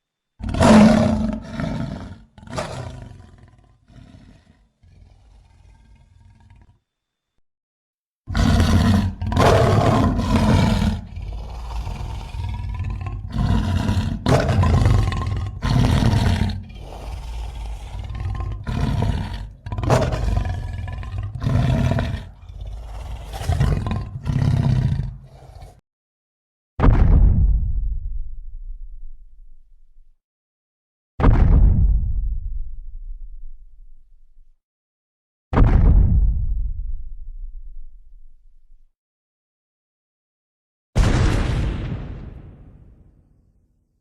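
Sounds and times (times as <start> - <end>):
monster roars and growls: 0.4 - 6.7, 8.3 - 25.8.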